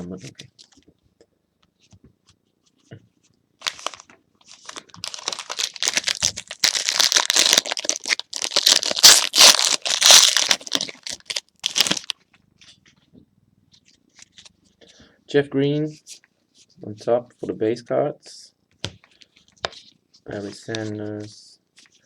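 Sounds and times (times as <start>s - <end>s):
wrapper tearing and crinkling: 3.6s - 12.2s.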